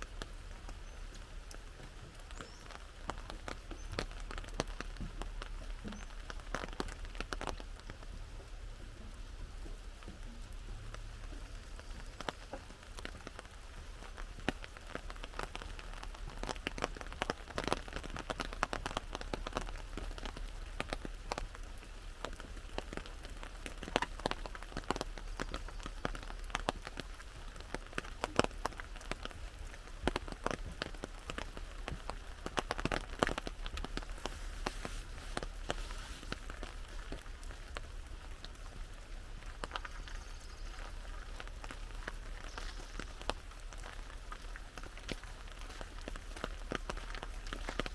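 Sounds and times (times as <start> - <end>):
rain drops tapping on umbrella: 0.0 - 47.9
steady hiss of rain: 0.0 - 47.9.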